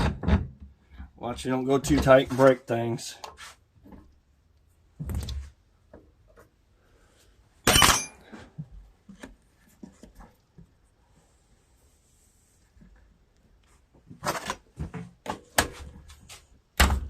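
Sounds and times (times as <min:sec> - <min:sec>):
metal tools clicking and clanking: 0:07.7 - 0:08.3.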